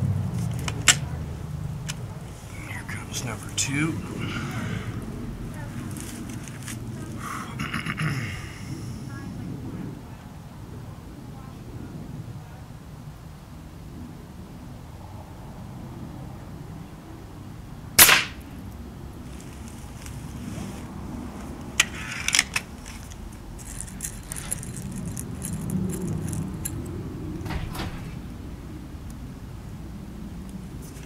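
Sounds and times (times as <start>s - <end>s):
air rifle shot: 18.0s - 18.4s.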